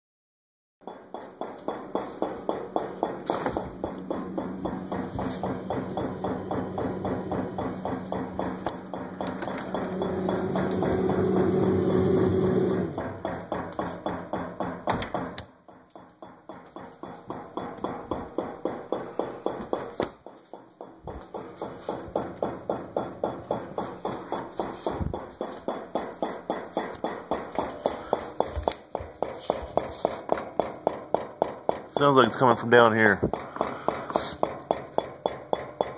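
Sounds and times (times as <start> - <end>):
refrigerator hum: 2.7 - 13.3.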